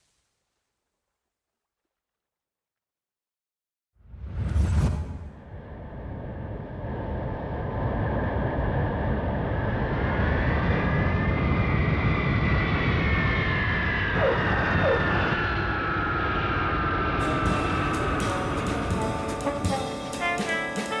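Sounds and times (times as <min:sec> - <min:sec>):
low engine rumble: 0:05.2 - 0:21.0
high engine whine: 0:05.4 - 0:21.0.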